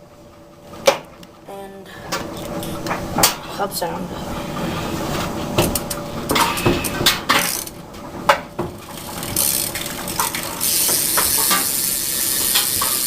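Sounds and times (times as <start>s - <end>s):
bike hub ratcheting: 6.3s - 7.8s, 8.8s - 13.0s.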